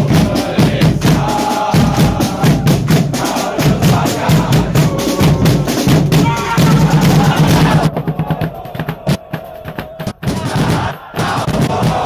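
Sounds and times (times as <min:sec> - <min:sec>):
drums beating fast rhythm: 0:00.0 - 0:12.0.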